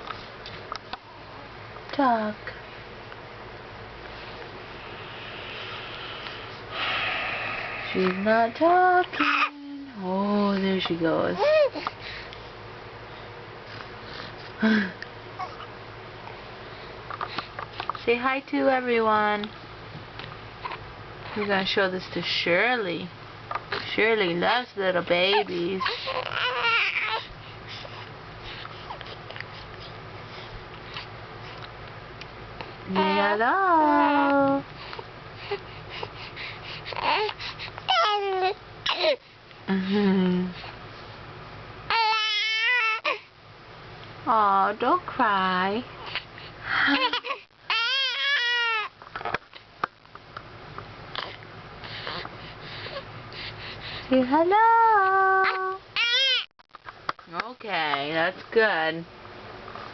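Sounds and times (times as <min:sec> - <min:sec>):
baby making small sounds: 0:09.1 - 0:09.9, 0:55.0 - 0:56.1
baby crying: 0:25.3 - 0:27.3, 0:37.9 - 0:39.2, 0:41.9 - 0:43.2, 0:47.0 - 0:48.9
high-pitched wavering vocal sound: 0:55.0 - 0:55.8.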